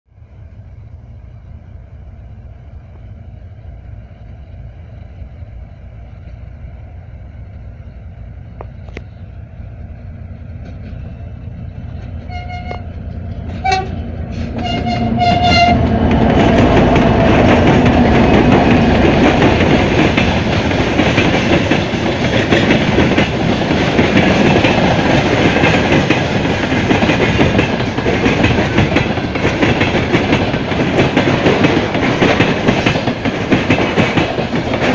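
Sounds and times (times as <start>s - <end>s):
diesel locomotive engine: 0.1s - 34.9s
locomotive horn toots: 12.2s - 15.9s.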